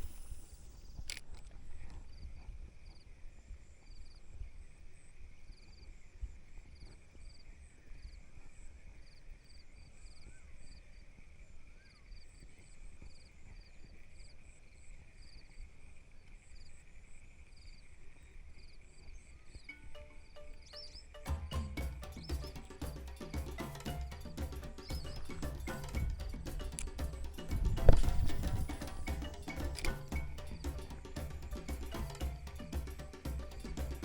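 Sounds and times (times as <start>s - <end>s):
insect chirps: 0.0s - 34.0s
insects trilling: 16.4s - 34.0s.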